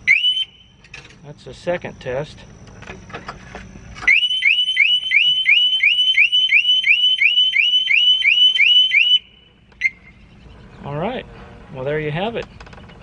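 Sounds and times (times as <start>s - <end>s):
motorcycle alarm whooping: 0.0s - 0.9s, 3.9s - 10.5s
alarm chirp: 0.0s - 10.9s.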